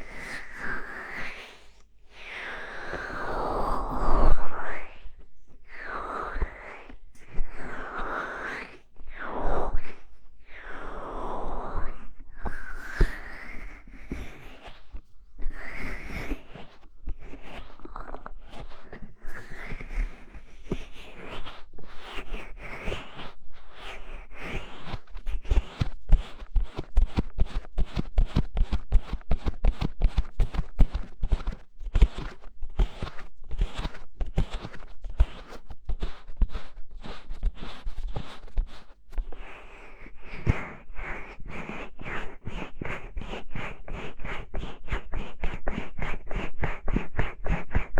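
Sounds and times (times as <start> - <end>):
hands rubbing over microphone: 11.9 - 47.9
fingertip scratching microphone: 12.4 - 47.9.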